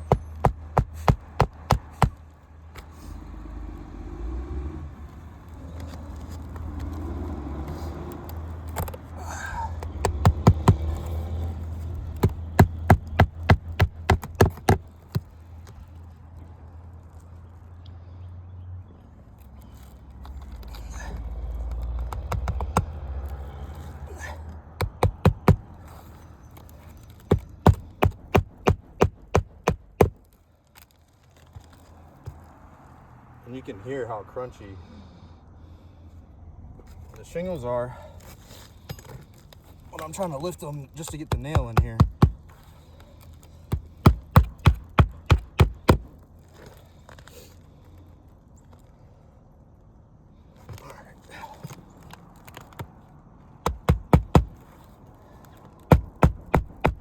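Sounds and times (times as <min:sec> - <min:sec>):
hammer blows on nails: 0:00.0 - 0:02.2, 0:08.7 - 0:15.3, 0:22.0 - 0:22.9, 0:24.2 - 0:26.2, 0:27.2 - 0:30.2, 0:41.0 - 0:42.7, 0:43.6 - 0:46.1, 0:53.6 - 0:54.8, 0:55.8 - 0:57.0.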